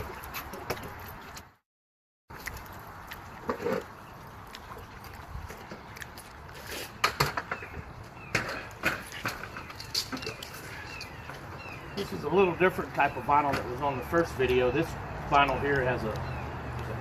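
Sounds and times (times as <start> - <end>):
birds chirping: 3.8 - 17.0.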